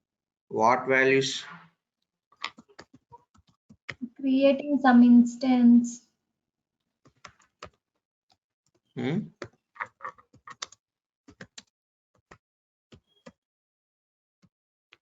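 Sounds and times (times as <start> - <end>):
keyboard typing: 9.4 - 12.3.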